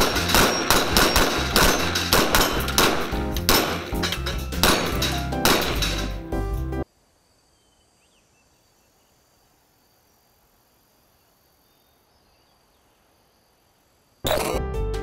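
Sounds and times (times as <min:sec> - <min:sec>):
music: 0:00.0 - 0:06.8, 0:14.3 - 0:15.0
faint insect chirring: 0:06.8 - 0:14.3.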